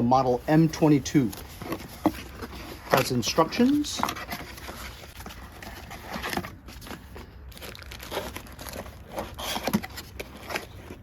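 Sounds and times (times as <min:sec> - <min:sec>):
paper and plastic crinkling: 0:00.5 - 0:11.0
cardboard taps and scrapes: 0:01.3 - 0:07.3.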